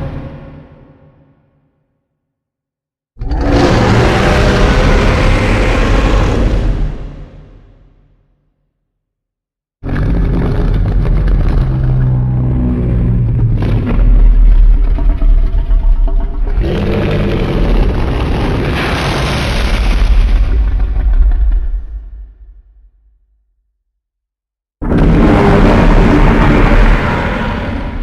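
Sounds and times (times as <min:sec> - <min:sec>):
monster roar: 0:03.2 - 0:07.4, 0:09.8 - 0:21.7, 0:24.9 - 0:28.0.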